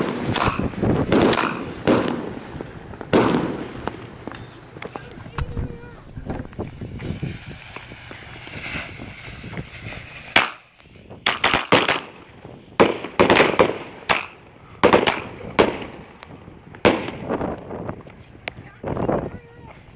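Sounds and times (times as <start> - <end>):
firecracker bangs: 0.0 - 2.4, 3.1 - 4.4, 6.3 - 16.0.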